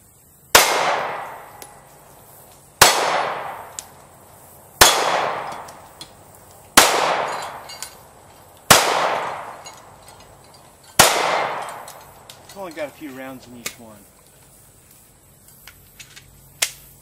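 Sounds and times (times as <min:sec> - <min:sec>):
pistol shots with echo: 0:00.5 - 0:01.7, 0:02.8 - 0:03.8, 0:04.8 - 0:05.8, 0:06.8 - 0:07.7, 0:08.7 - 0:09.7, 0:11.0 - 0:12.0.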